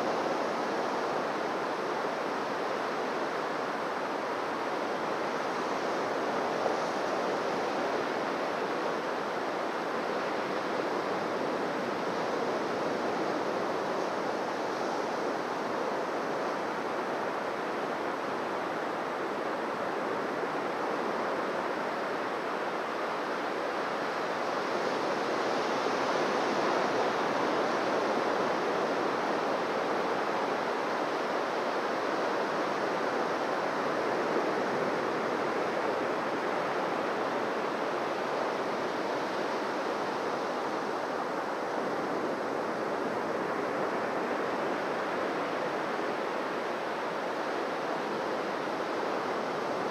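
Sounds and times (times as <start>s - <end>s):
waves washing on a beach: 0.0s - 49.9s.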